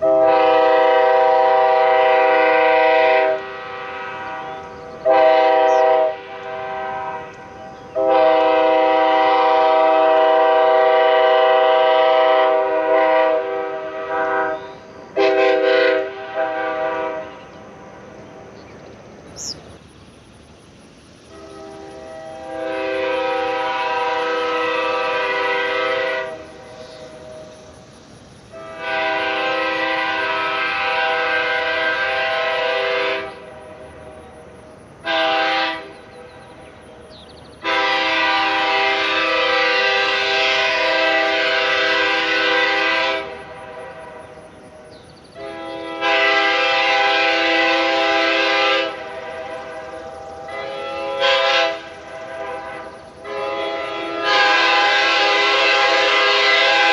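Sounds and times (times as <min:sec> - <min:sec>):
train horn blasts: 0:00.0 - 0:17.8, 0:21.2 - 0:27.8, 0:28.4 - 0:56.9.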